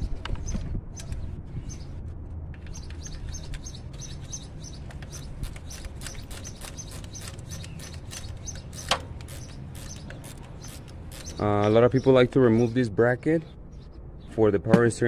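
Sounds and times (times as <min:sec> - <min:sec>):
small bird chirping: 0:02.6 - 0:12.9.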